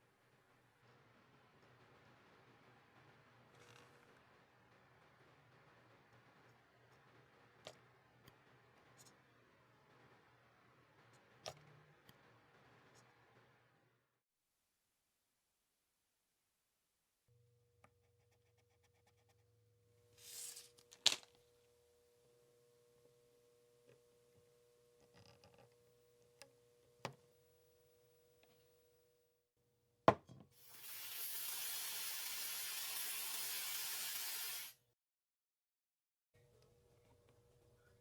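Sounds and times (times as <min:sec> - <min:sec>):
steady hiss: 0:30.6 - 0:34.8.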